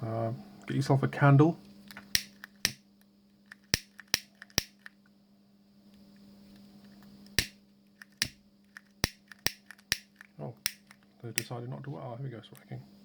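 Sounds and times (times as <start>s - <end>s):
lighter clicking: 2.1s - 2.8s, 3.7s - 4.9s, 7.3s - 8.4s, 9.0s - 11.5s.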